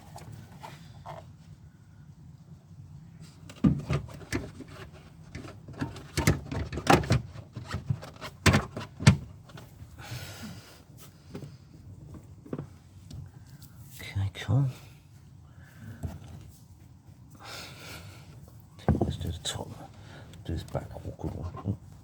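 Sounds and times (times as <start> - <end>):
plastic light parts clicking and knocking: 3.5 - 9.7.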